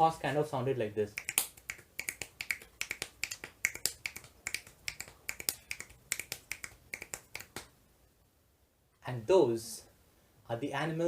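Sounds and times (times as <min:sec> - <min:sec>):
person clicking like hoofbeats: 0:01.2 - 0:07.7.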